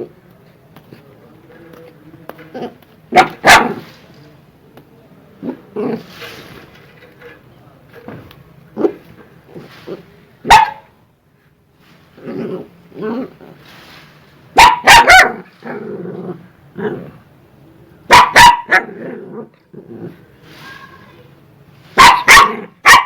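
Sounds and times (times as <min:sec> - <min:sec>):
dogs barking aggressively: 0:03.1 - 0:03.9, 0:10.4 - 0:10.9, 0:14.5 - 0:15.9, 0:18.1 - 0:19.4, 0:22.0 - 0:23.0.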